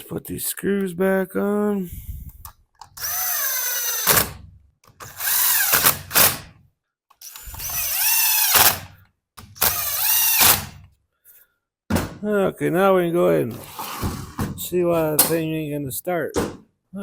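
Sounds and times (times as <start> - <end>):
power drill driving screws: 2.9 - 6.5, 7.2 - 10.8.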